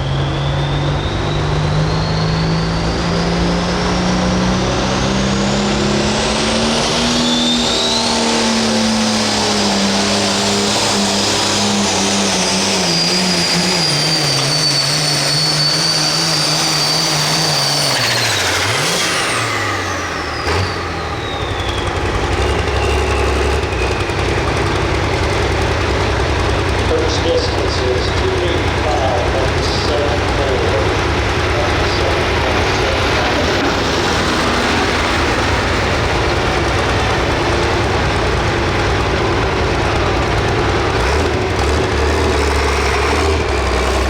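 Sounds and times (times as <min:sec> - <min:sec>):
diesel tractor engine under load: 0:00.0 - 0:44.0
turbo whistle: 0:11.1 - 0:24.5.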